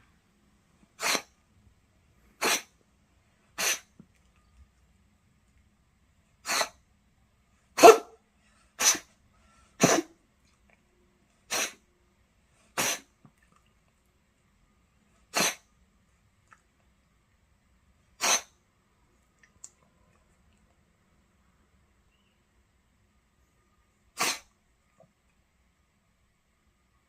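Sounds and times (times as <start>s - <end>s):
cat sneezing: 0.9s - 1.4s, 2.4s - 2.8s, 3.5s - 4.0s, 6.4s - 6.8s, 7.8s - 8.2s, 8.8s - 9.2s, 9.8s - 10.2s, 11.5s - 11.9s, 12.7s - 13.2s, 15.3s - 15.7s, 18.2s - 18.6s, 24.1s - 24.6s.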